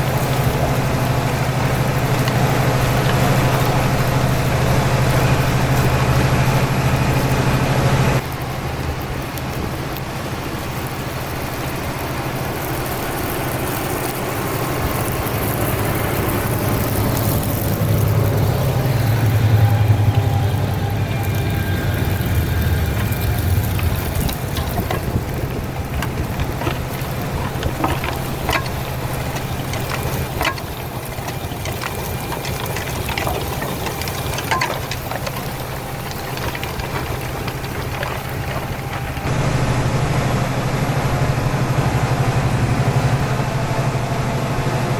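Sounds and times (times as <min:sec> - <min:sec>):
tractor engine running: 0:00.0 - 0:44.9
clicks and knocks: 0:22.1 - 0:39.3.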